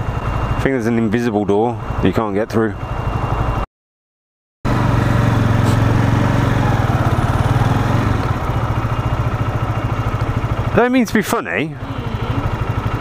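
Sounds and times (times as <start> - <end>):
motorcycle engine idling: 4.7 - 13.0.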